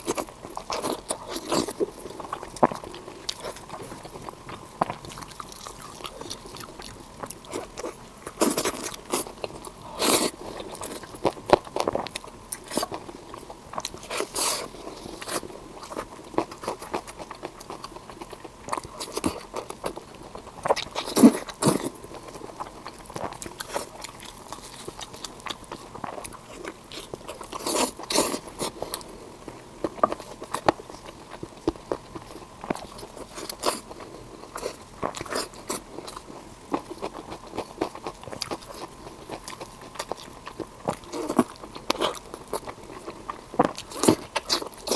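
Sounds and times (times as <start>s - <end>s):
person chewing food: 0.0s - 44.9s.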